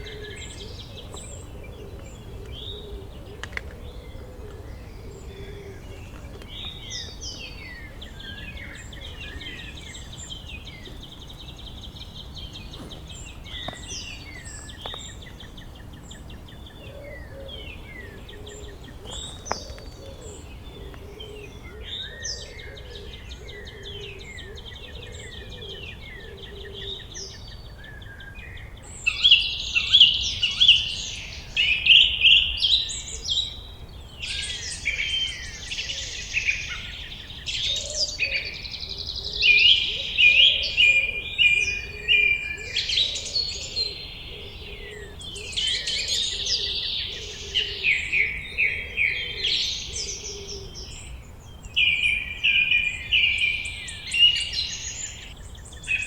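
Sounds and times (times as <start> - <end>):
low outdoor rumble: 0.0 - 21.6
birds chirping and whistling: 0.0 - 56.0.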